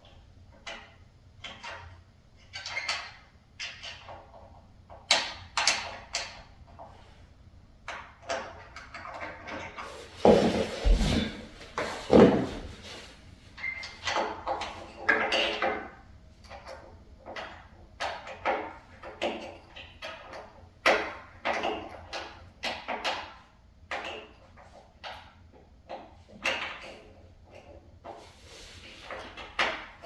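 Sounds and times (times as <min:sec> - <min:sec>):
knocks on wooden bed frame: 0:10.2 - 0:12.8.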